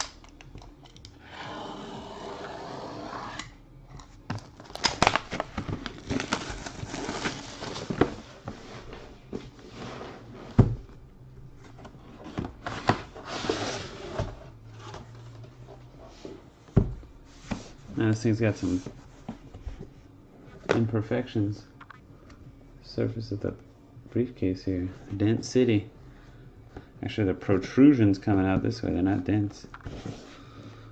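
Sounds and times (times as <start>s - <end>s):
plastic wrap tearing and crinkling: 4.4s - 8.2s.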